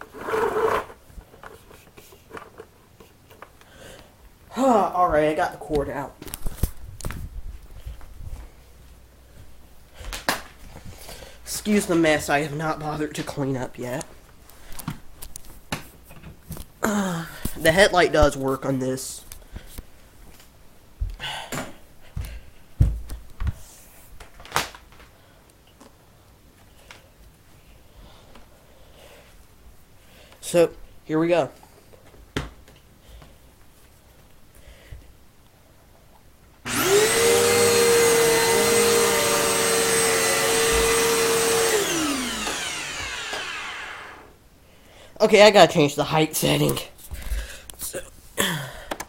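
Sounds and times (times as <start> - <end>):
vacuum cleaner motor whine: 36.7 - 44.3.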